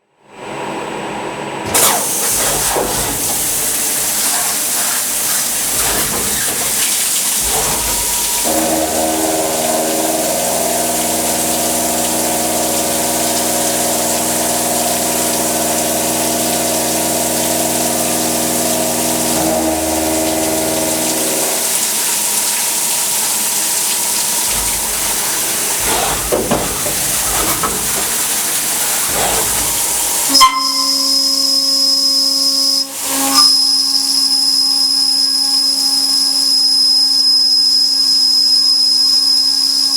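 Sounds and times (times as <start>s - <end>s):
milling machine whine: 1.2s - 39.9s
milling machine hiss: 1.7s - 35.7s.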